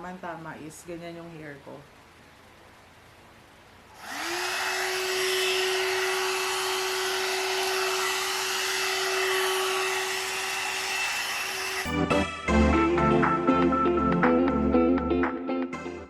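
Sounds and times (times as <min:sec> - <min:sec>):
hair dryer motor whining: 0:03.9 - 0:12.0.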